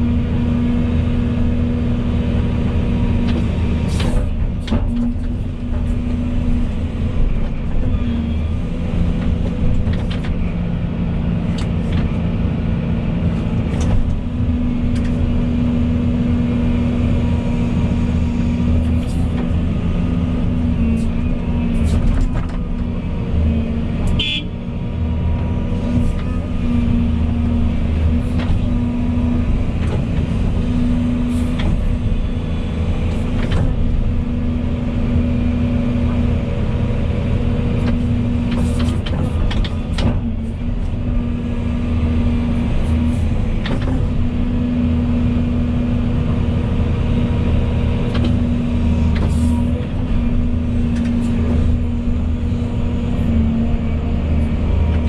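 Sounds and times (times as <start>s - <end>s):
excavator diesel engine running: 0.0s - 55.0s
sharp digging clicks and knocks: 29.7s - 30.6s, 42.6s - 44.2s, 48.1s - 48.5s.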